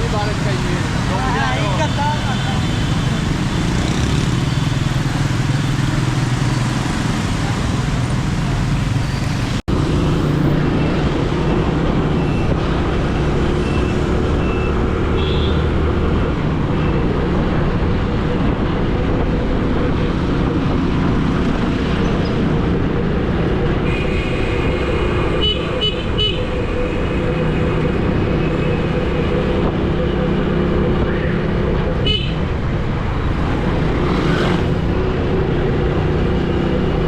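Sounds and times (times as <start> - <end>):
vehicle engines running: 0.0 - 15.1.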